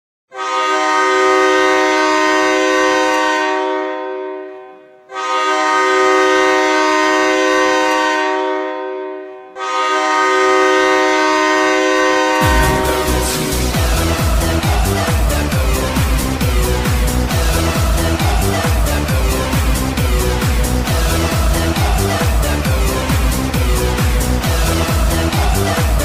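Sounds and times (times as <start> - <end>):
goal horn blasts: 0.3 - 14.4
electronic dance music: 12.4 - 26.0.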